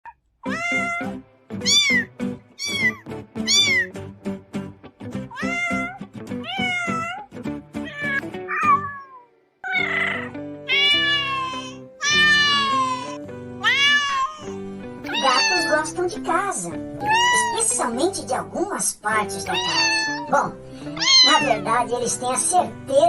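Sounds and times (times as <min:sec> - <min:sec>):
cats meowing: 0:00.4 - 0:03.9, 0:05.3 - 0:15.9, 0:17.0 - 0:17.8, 0:19.5 - 0:21.7
background music: 0:00.5 - 0:23.0.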